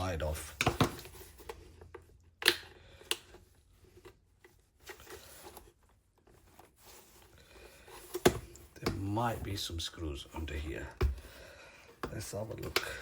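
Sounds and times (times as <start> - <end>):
plastic radio casing clacks: 12.0 - 13.0.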